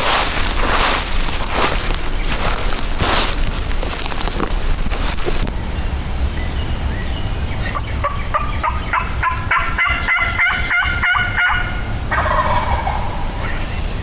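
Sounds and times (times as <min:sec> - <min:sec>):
turkey gobbling: 0:07.7 - 0:14.0.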